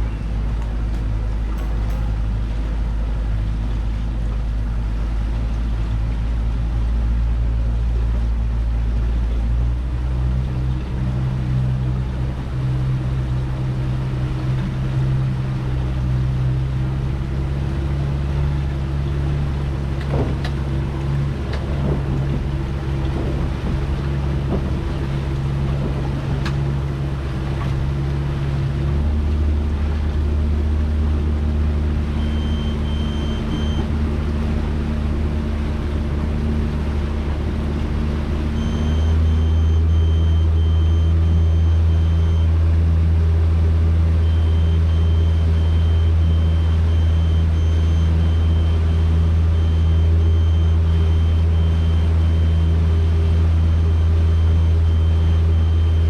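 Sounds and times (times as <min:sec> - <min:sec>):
boat engine running: 0:00.0 - 0:56.0.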